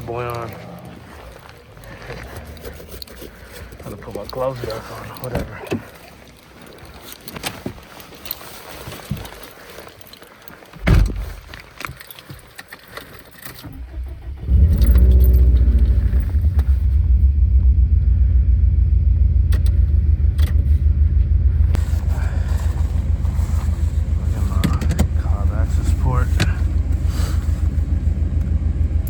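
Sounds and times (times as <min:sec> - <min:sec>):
keys jangling: 0:11.5 - 0:13.8
car engine starting and idling: 0:13.5 - 0:29.0.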